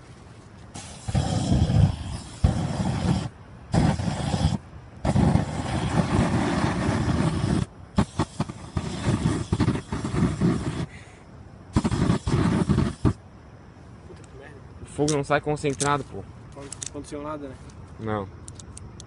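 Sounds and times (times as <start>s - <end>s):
aerosol flame hissing bursts: 0.7s - 13.2s.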